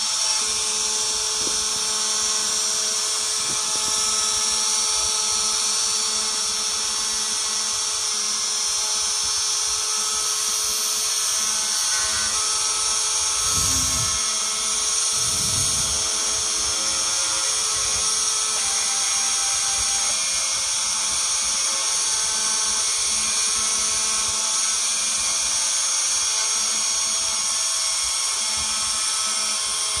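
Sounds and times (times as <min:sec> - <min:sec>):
spindle motor whine: 0:00.0 - 0:30.0.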